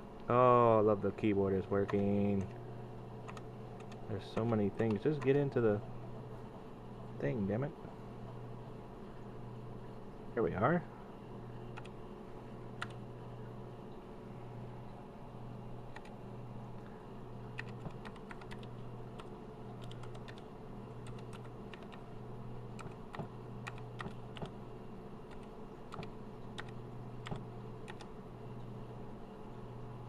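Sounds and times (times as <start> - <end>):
steady low hum: 0.0 - 30.0
keyboard keys clicking: 15.9 - 16.1, 17.6 - 20.4, 21.0 - 22.0, 22.8 - 24.6, 25.3 - 28.1.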